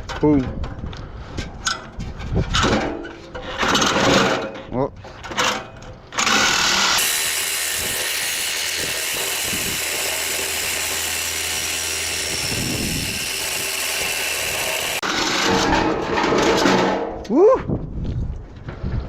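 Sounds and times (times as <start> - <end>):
reciprocating saw cutting metal: 6.1 - 15.8.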